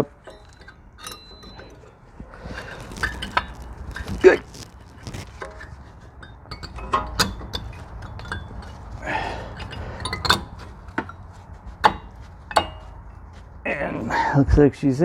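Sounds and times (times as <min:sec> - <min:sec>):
metal scrape: 0:00.0 - 0:14.3
metal brake pad clips clicking: 0:05.4 - 0:13.5.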